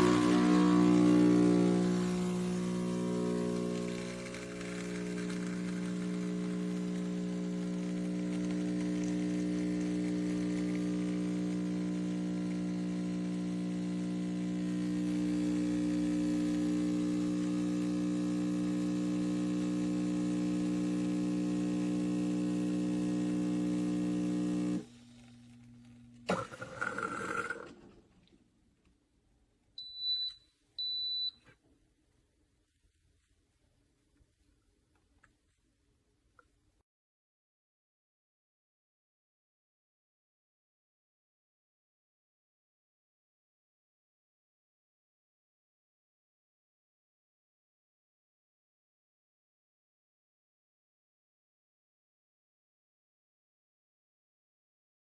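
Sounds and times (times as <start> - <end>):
espresso machine pump humming: 0.0 - 27.7
short high beeps: 29.8 - 31.4.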